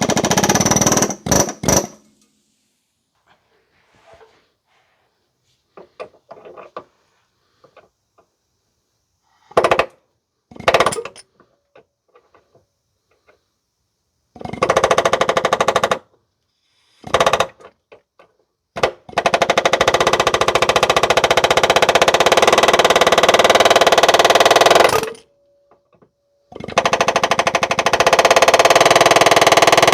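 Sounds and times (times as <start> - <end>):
pneumatic air hammer rattling: 0.0 - 2.2, 9.4 - 11.6, 14.4 - 16.0, 17.0 - 18.2, 18.8 - 25.3, 26.5 - 29.9.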